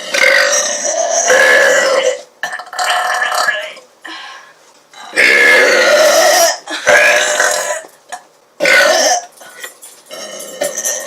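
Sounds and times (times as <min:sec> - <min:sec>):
loud belches: 0:00.0 - 0:03.8, 0:05.1 - 0:09.3, 0:10.1 - 0:11.0.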